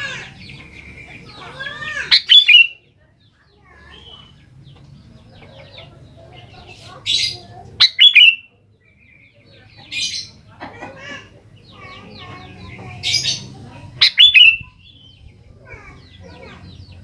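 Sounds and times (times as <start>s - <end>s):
soft bird twittering: 0.0s - 10.5s, 11.5s - 17.0s
bird whistled calls: 2.1s - 2.8s, 7.8s - 8.5s, 14.0s - 14.7s.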